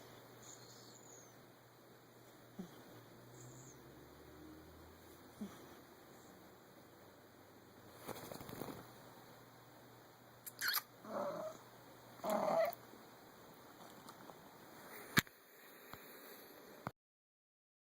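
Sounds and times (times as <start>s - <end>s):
pet snoring: 11.0s - 11.6s, 12.2s - 12.8s.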